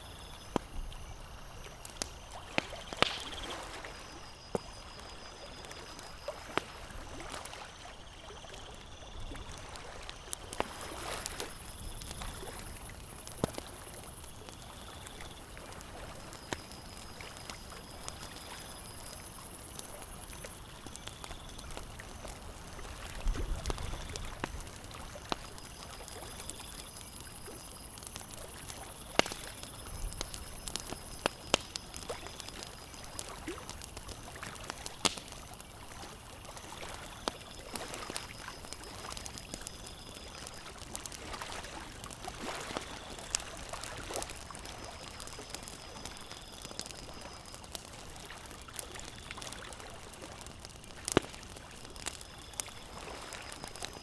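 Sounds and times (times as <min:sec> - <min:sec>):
campfire crackling and popping: 0:00.0 - 0:54.0
lake water lapping: 0:40.4 - 0:46.0.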